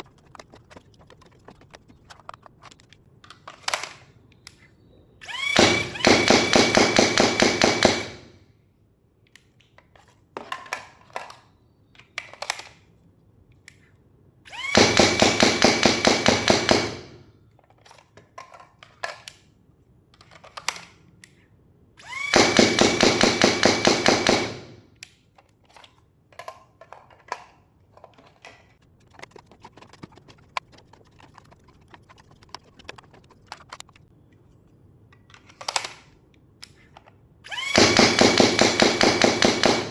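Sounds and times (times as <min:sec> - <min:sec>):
magazine clicks and rattles: 0:01.7 - 0:04.6, 0:12.0 - 0:12.9, 0:20.1 - 0:21.4, 0:22.5 - 0:28.8, 0:35.1 - 0:37.2
foam dart blaster firing bursts: 0:05.4 - 0:08.3, 0:14.5 - 0:17.2, 0:22.0 - 0:24.8, 0:37.5 - 0:39.9.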